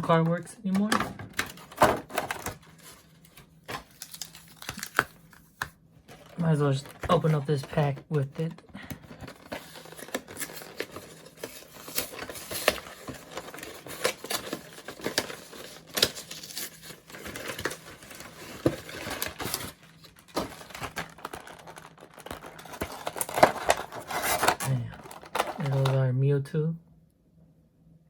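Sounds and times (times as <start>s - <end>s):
foil wrapper tearing and crinkling: 1.4s - 7.8s, 8.5s - 26.0s.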